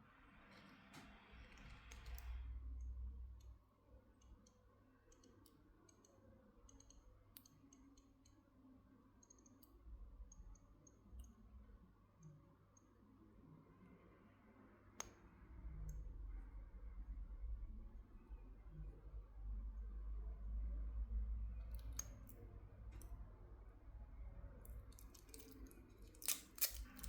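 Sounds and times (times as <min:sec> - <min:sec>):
clicks handling a wristwatch: 0:24.6 - 0:27.0.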